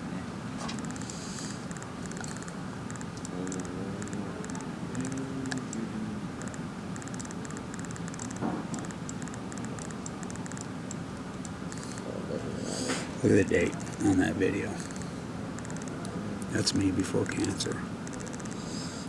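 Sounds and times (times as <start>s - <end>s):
steady background noise: 0.0s - 19.0s
keyboard key clicks: 6.4s - 10.7s.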